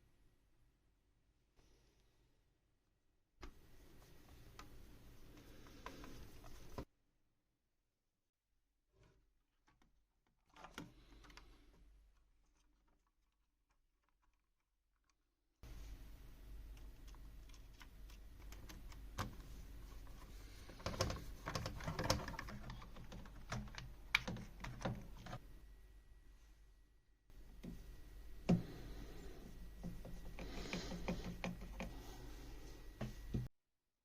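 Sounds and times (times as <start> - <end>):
steady low hum: 15.6 - 33.5
small clicks and taps: 16.6 - 25.4, 29.8 - 32.0.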